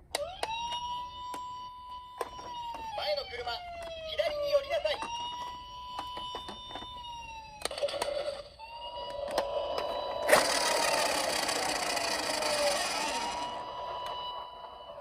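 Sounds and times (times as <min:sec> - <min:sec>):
toy siren wailing: 0:00.1 - 0:15.0.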